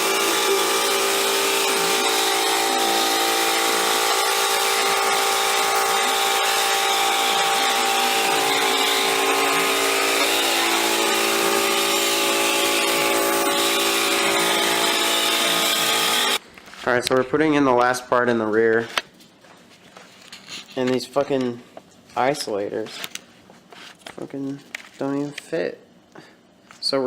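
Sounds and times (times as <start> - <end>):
electric motor buzzing hum: 0.0 - 16.4.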